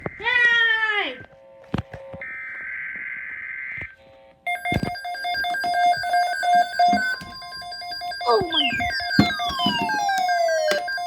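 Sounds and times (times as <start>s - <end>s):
electronic alarm beeping tones: 4.5s - 11.0s.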